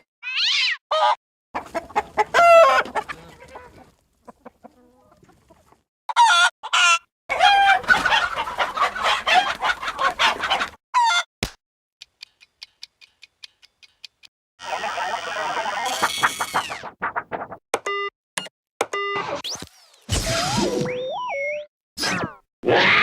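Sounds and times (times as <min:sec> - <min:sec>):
chicken clucks and squawks: 0:00.9 - 0:11.3, 0:14.6 - 0:15.9
hens clucking: 0:00.9 - 0:11.3, 0:14.6 - 0:15.9.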